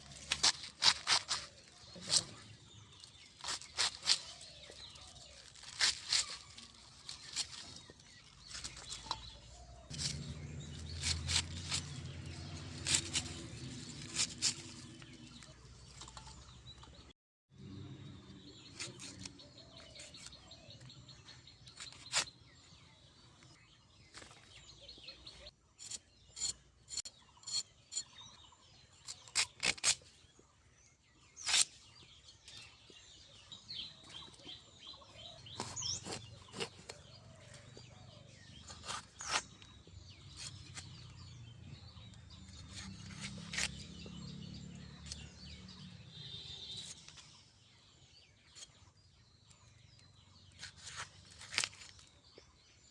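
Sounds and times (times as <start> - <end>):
birds chirping: 0.0 - 17.1, 17.7 - 52.9
knife cutting vegetables: 8.5 - 16.4, 29.1 - 30.0, 35.6 - 37.0, 38.6 - 39.7, 42.5 - 43.9.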